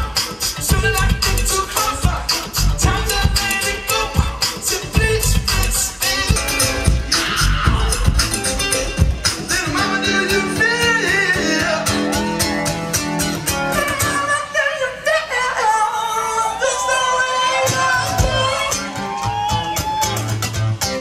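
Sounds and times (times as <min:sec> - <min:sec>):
low bass notes: 0:00.0 - 0:13.9
live band music: 0:00.0 - 0:14.6, 0:17.6 - 0:21.0
person singing: 0:00.0 - 0:19.4
guitar: 0:00.0 - 0:21.0.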